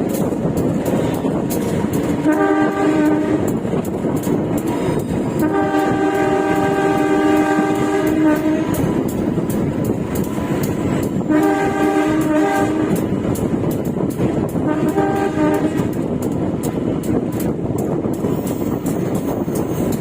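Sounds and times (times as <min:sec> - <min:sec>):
train wheels rumbling on rails: 0:00.0 - 0:20.0
locomotive horn blasts: 0:02.1 - 0:03.6, 0:05.4 - 0:08.9, 0:11.2 - 0:13.0, 0:14.6 - 0:16.0.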